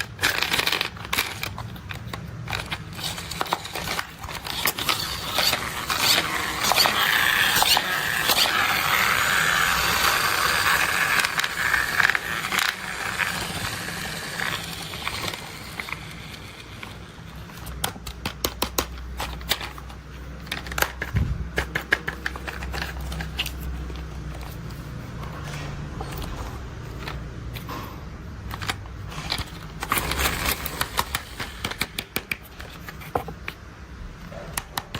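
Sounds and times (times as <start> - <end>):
sharp plastic clicks: 0.0 - 24.7, 28.4 - 33.6, 34.4 - 34.9
plastic toy scraping rattle: 0.0 - 33.4.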